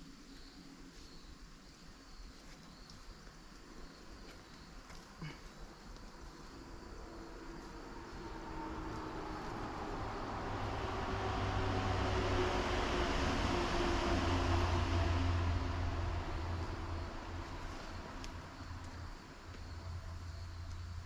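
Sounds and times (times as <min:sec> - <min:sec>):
motor vehicle passing: 0:07.0 - 0:19.2.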